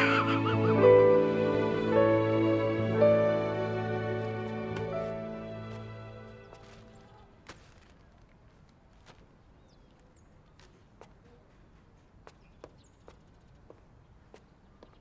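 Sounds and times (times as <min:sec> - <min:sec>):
sad background music: 0:00.0 - 0:07.1
outdoor ambience: 0:00.0 - 0:15.0.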